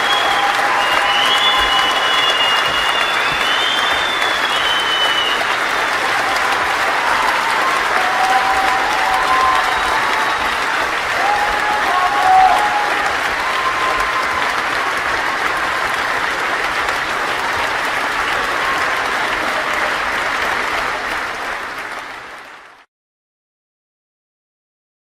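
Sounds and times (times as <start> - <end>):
short whistles: 0.0 - 5.5
crowd applauding: 0.0 - 22.9.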